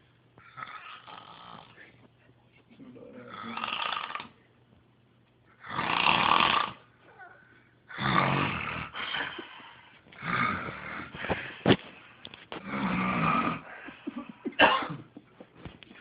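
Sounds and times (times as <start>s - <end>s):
person snoring loudly: 0.4s - 1.8s, 3.1s - 4.4s, 5.6s - 6.8s, 7.9s - 11.2s, 12.6s - 13.8s.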